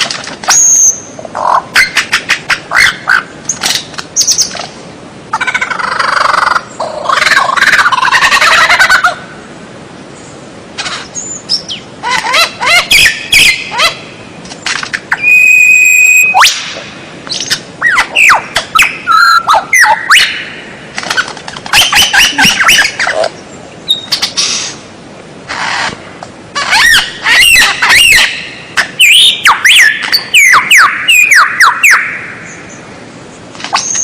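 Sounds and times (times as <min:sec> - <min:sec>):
bird singing whistles: 0:15.2 - 0:16.6.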